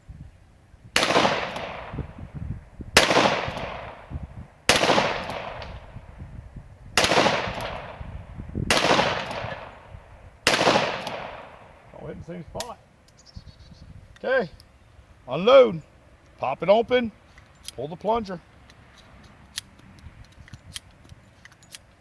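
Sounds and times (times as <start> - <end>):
long gunshot echo: 1.0 - 2.4, 3.0 - 6.1, 7.0 - 12.0
revolver shots: 7.0 - 11.8.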